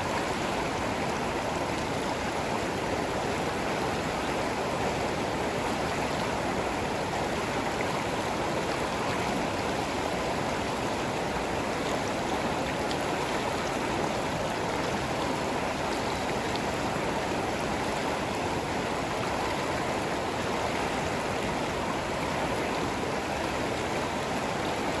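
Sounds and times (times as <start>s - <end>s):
stream water rushing: 0.0s - 25.0s.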